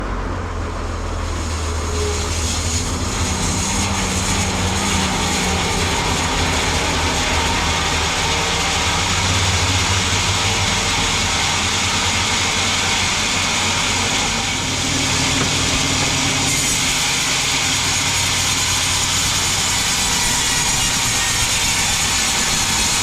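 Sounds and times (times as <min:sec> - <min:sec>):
sawmill engine hum: 0:00.0 - 0:23.0
loud even hiss: 0:01.0 - 0:23.0.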